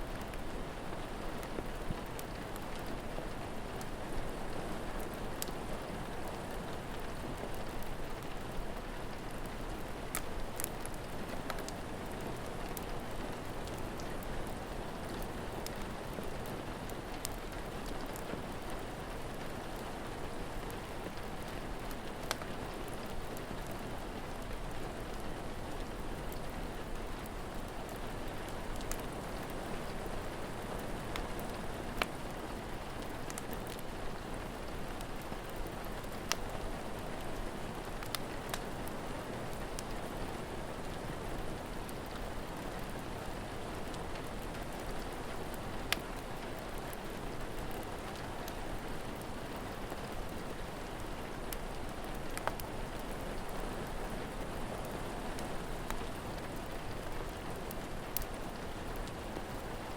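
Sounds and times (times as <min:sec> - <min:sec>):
steady rain falling: 0:00.0 - 0:59.9
crackling fire pops: 0:06.2 - 0:19.9, 0:20.5 - 0:23.8, 0:24.5 - 0:36.6, 0:37.2 - 0:38.8, 0:43.8 - 0:54.0, 0:54.9 - 0:59.7.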